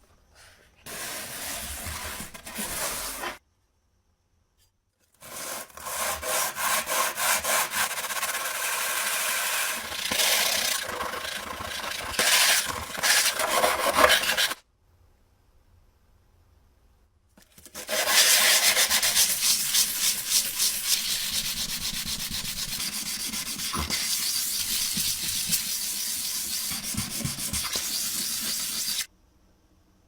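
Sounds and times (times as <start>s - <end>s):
abrasive rubbing strokes: 18.1s - 29.1s.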